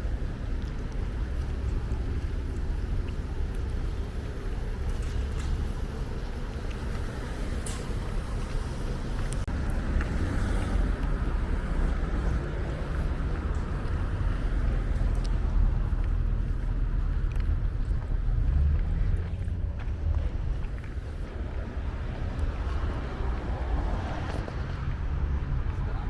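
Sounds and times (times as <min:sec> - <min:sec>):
traffic rumble: 0:00.0 - 0:26.0.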